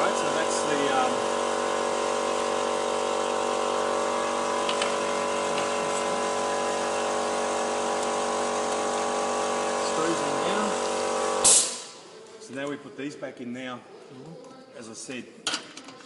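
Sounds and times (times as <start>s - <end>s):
machine hum: 0.0s - 11.4s.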